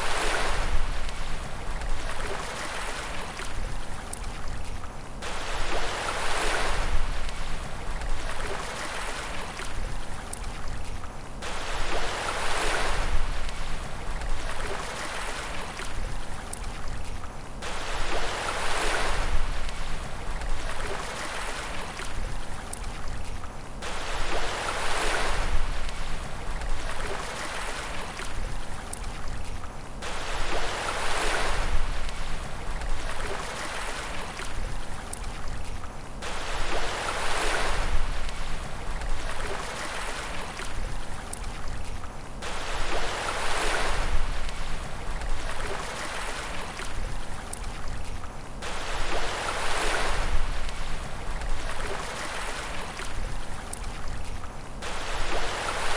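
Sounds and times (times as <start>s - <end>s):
rush of surf: 0.0s - 1.4s, 5.2s - 7.6s, 11.4s - 13.8s, 17.6s - 20.0s, 23.8s - 26.2s, 30.0s - 32.4s, 36.2s - 38.6s, 42.4s - 44.8s, 48.6s - 53.1s, 54.8s - 55.9s
sea waves breaking: 0.0s - 55.9s.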